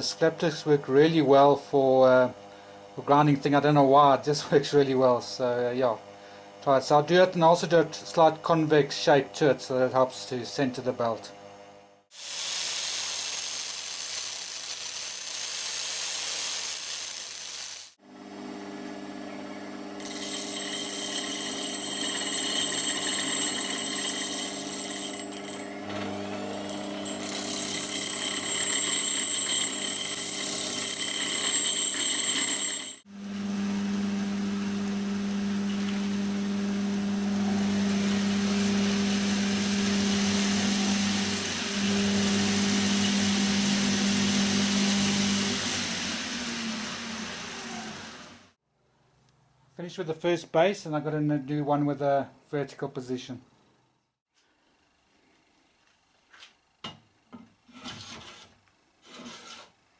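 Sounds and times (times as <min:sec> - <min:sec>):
angle grinder grinding steel: 0:19.9 - 0:48.5.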